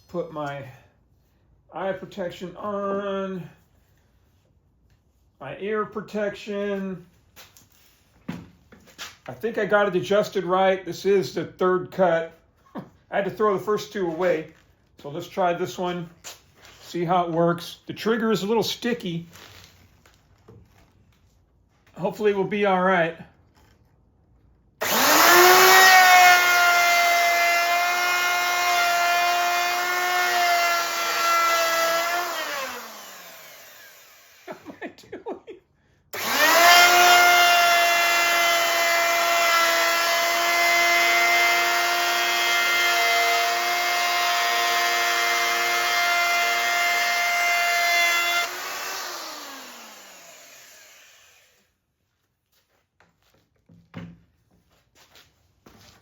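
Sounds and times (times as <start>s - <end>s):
router motor whining: 24.8s - 34.6s, 36.2s - 51.7s.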